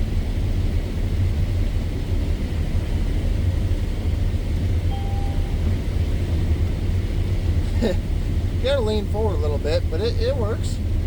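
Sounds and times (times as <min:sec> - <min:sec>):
combine harvester engine rumble: 0:00.0 - 0:11.0
faint tone: 0:04.9 - 0:05.7.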